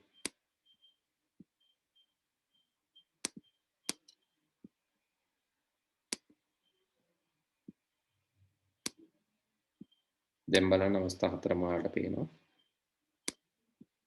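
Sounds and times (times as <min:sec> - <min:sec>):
computer mouse clicking: 0:03.2 - 0:04.2.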